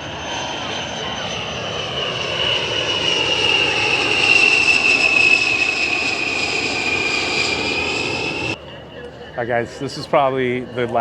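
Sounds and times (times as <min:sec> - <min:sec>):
jet rush flying past: 0:00.0 - 0:08.6
jet engines whining: 0:00.0 - 0:11.0.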